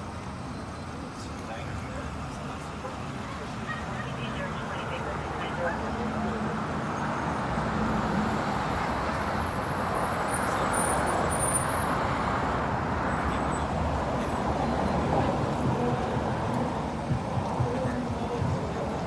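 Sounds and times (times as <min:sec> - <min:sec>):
street traffic passing: 0:00.0 - 0:19.0.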